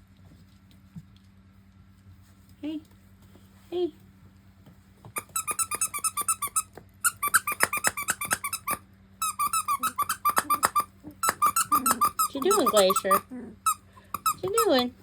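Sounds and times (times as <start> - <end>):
puppy yelping: 5.2 - 14.8.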